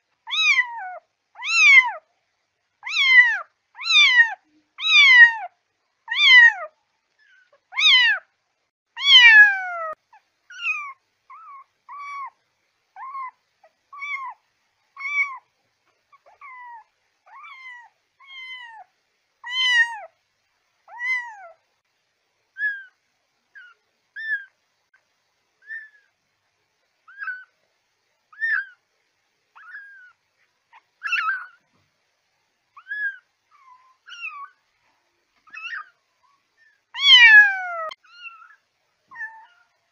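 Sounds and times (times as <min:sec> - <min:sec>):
kitten meowing: 0:00.3 - 0:02.0, 0:02.8 - 0:05.5, 0:06.1 - 0:06.7, 0:07.3 - 0:08.2, 0:09.0 - 0:12.4, 0:13.0 - 0:14.4, 0:15.0 - 0:15.5, 0:16.2 - 0:20.1, 0:20.9 - 0:21.6, 0:23.6 - 0:24.5, 0:27.1 - 0:27.5, 0:28.3 - 0:28.8, 0:29.6 - 0:31.6, 0:32.8 - 0:34.6, 0:35.5 - 0:36.0, 0:37.0 - 0:39.7.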